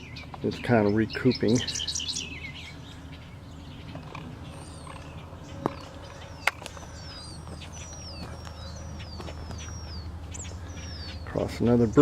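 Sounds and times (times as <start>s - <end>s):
low steady rumble: 0.0s - 12.0s
bird whistling downward notes: 5.7s - 11.2s.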